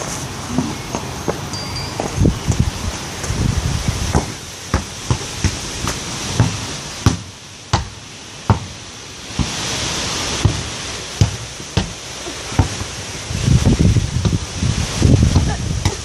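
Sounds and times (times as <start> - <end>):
football thudding: 4.0 - 9.6, 10.4 - 13.0.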